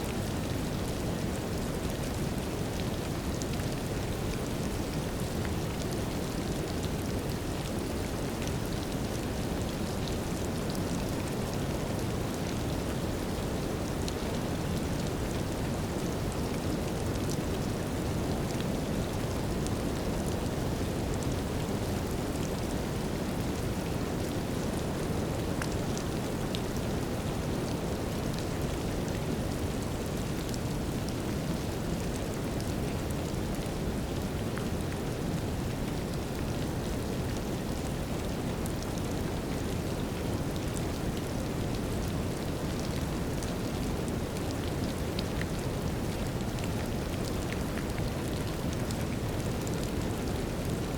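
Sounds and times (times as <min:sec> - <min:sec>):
light rain drizzle: 0:00.0 - 0:50.9.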